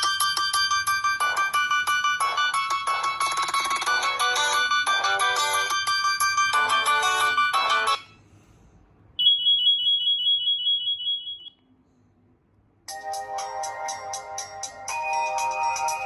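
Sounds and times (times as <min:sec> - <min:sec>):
ringtone melody: 0:00.0 - 0:08.2, 0:12.9 - 0:16.0.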